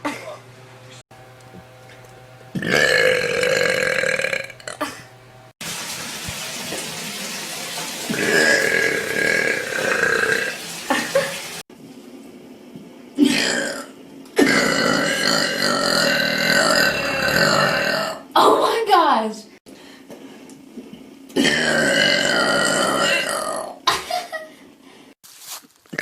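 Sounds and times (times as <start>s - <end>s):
woman burping: 2.6s - 5.2s, 8.1s - 11.3s, 13.2s - 18.3s, 21.4s - 23.9s.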